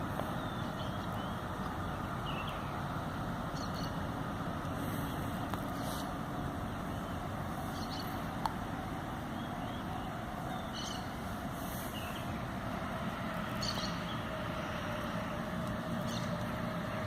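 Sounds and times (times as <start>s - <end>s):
low background rumble: 0.0s - 17.0s
faint high bird chirps: 6.9s - 8.2s, 13.6s - 14.2s.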